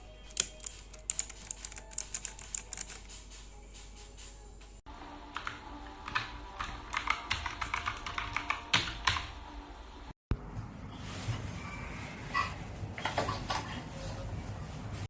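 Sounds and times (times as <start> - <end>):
mechanical keyboard key clicks: 0.3 - 3.0.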